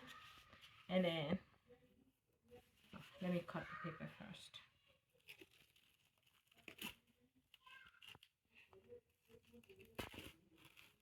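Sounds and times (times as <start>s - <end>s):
plastic wrap crinkling and ripping: 5.1s - 8.6s.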